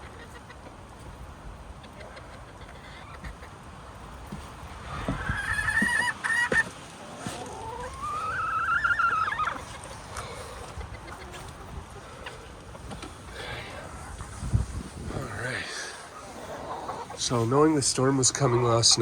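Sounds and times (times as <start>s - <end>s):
hen calling: 4.8s - 19.0s.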